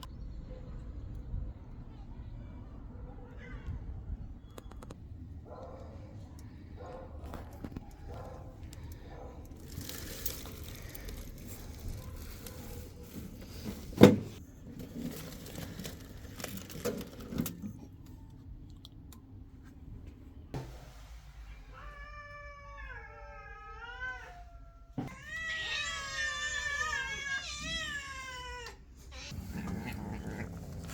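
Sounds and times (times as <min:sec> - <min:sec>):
cat meowing: 0:21.7 - 0:30.5.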